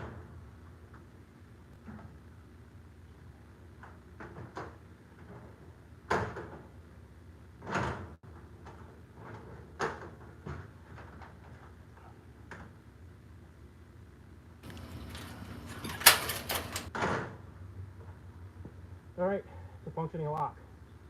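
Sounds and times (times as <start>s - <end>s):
door lock clicks and clunks: 14.6s - 17.0s.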